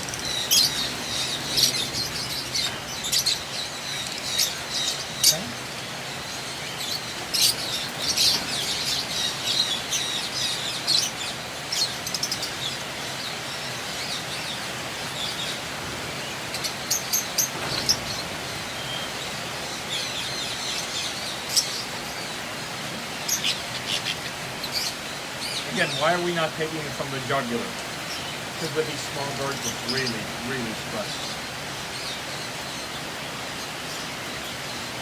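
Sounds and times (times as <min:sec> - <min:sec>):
lovebirds chirping: 0:00.0 - 0:35.0
steady background hiss: 0:00.0 - 0:35.0.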